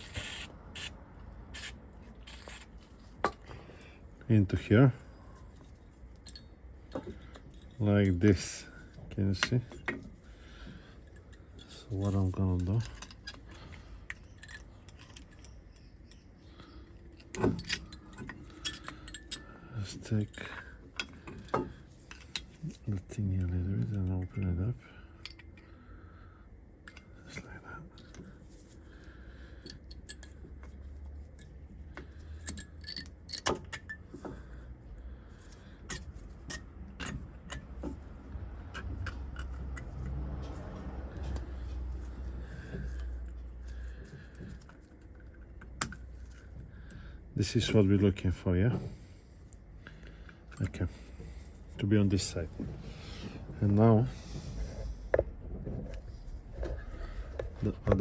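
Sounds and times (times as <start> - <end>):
low steady hum: 0.0 - 58.0
metal parts clinking: 4.4 - 25.7, 29.6 - 34.6, 35.3 - 40.6.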